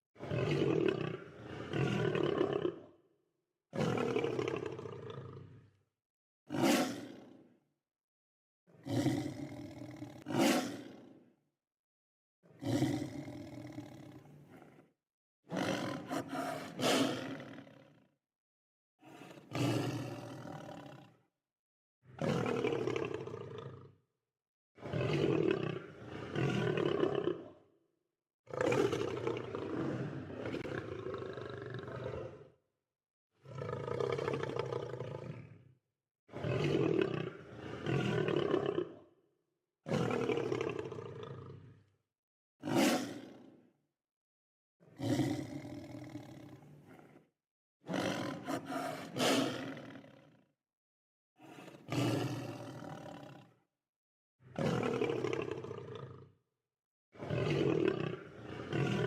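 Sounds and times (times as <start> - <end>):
lion roaring: 0.2 - 2.9, 8.8 - 11.0, 12.6 - 14.8, 15.5 - 17.9, 19.0 - 21.2, 24.8 - 27.6, 28.5 - 32.5, 33.4 - 35.7, 36.3 - 39.0, 42.7 - 43.4, 45.0 - 47.2, 47.9 - 50.4, 51.4 - 53.4, 54.6 - 56.3, 57.2 - 59.0.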